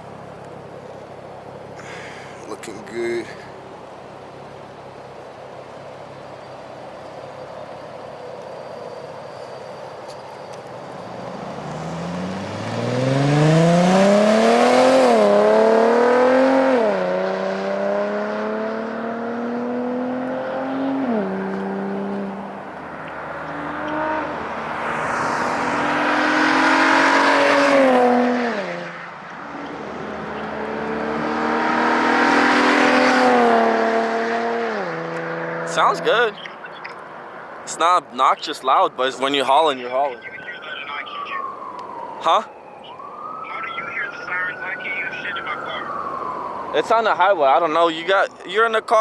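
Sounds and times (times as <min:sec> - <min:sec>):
car accelerating hard: 0:11.0 - 0:36.3.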